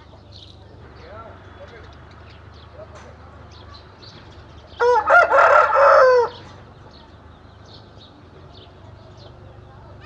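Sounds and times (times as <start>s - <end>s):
rooster crowing: 4.8s - 6.4s.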